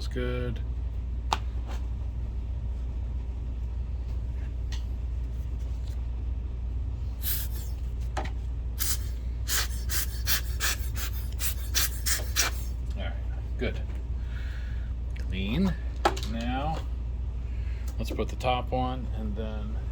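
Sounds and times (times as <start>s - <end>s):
steady low hum: 0.0s - 19.9s
short hissing bursts: 7.2s - 7.8s, 8.8s - 12.8s.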